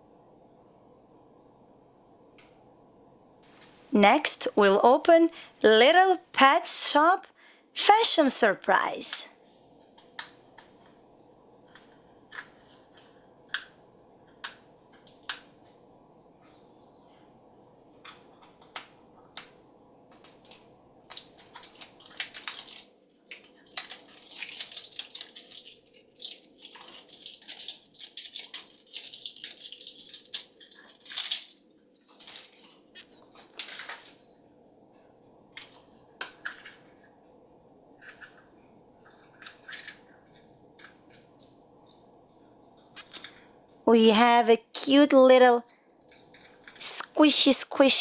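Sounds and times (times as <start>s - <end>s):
plastic wrapping crinkling: 20.4s - 34.4s.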